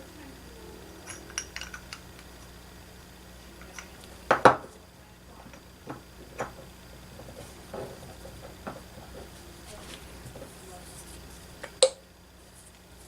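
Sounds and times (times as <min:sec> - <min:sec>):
metal parts clicking on workbench: 0:01.0 - 0:02.5
metal parts knocking: 0:01.0 - 0:02.6.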